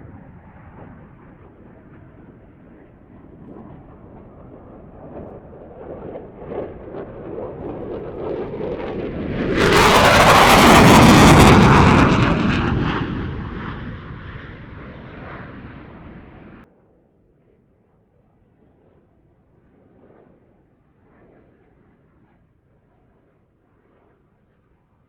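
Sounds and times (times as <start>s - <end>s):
military jet flying past: 0.0s - 16.6s.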